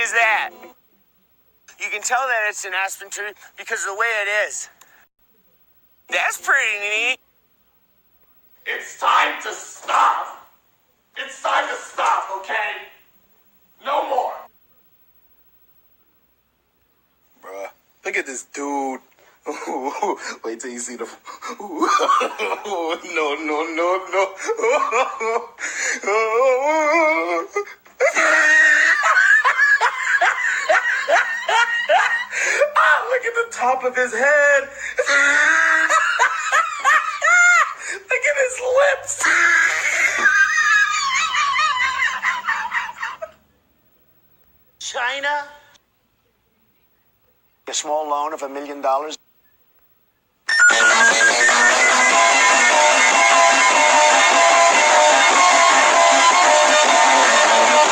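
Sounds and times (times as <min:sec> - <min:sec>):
man laughing hysterically: 0:21.3 - 0:23.2, 0:24.1 - 0:32.9, 0:35.0 - 0:38.1, 0:39.2 - 0:43.4, 0:50.5 - 0:57.9
man's high strained cry: 0:24.4 - 0:29.5, 0:34.8 - 0:38.2, 0:39.0 - 0:43.1, 0:50.5 - 0:57.9
strummed and picked guitar: 0:50.7 - 0:57.9.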